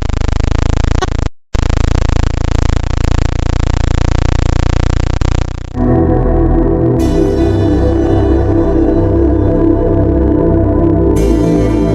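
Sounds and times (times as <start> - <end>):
dense drone of steady tones: 5.8 - 11.9.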